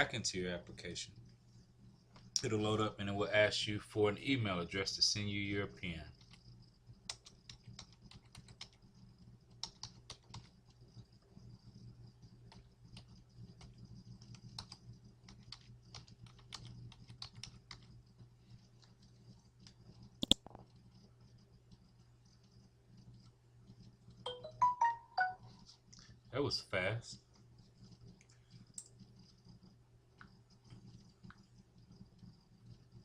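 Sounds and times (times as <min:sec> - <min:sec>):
low steady hum: 0:00.0 - 0:33.0
keyboard keys clicking: 0:13.6 - 0:17.9.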